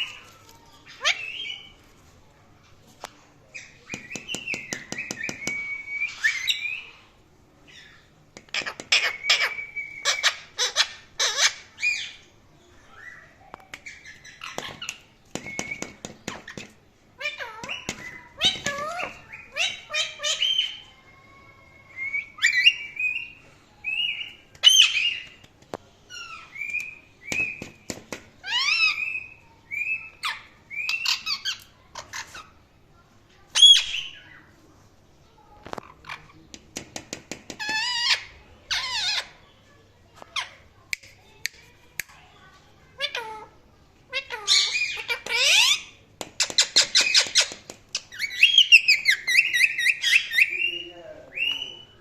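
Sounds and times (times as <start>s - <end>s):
parakeet squawking and chirping: 0.0s - 1.8s, 6.0s - 7.0s, 7.7s - 12.2s, 13.0s - 20.9s, 22.1s - 25.4s, 28.4s - 32.7s, 33.5s - 34.4s, 37.5s - 39.5s, 43.0s - 52.0s
parrot whistled chirps: 5.2s - 6.8s, 9.0s - 10.5s
parrot squawks: 8.6s - 12.2s, 44.1s - 46.0s.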